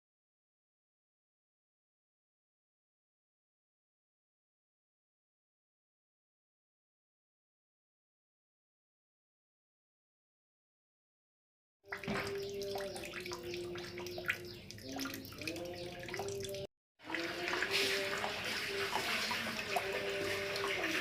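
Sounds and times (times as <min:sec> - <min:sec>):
running water splashing: 0:11.9 - 0:21.0.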